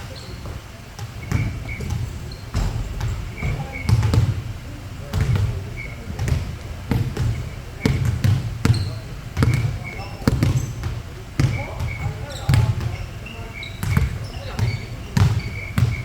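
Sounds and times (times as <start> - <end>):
basketballs bouncing on gym floor: 0.0 - 16.0
high shoe squeaks: 0.0 - 16.0.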